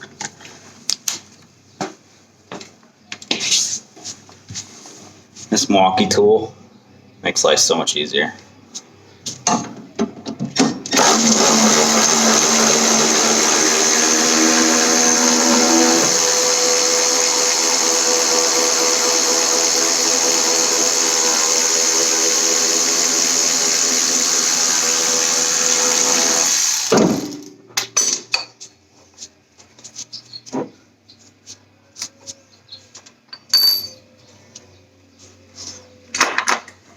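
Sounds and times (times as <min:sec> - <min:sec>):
cordless power tool running: 0:10.9 - 0:26.9.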